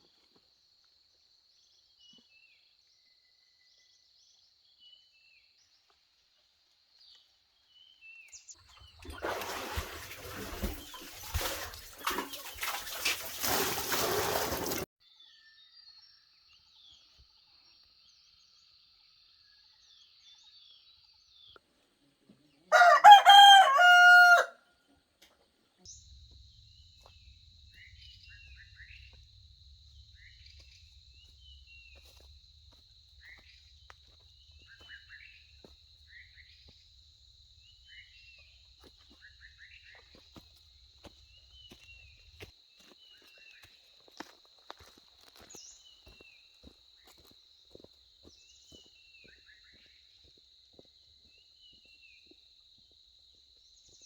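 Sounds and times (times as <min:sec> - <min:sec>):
faint small bird chirps: 0:15.0 - 0:21.7
rooster crowing: 0:22.7 - 0:24.7.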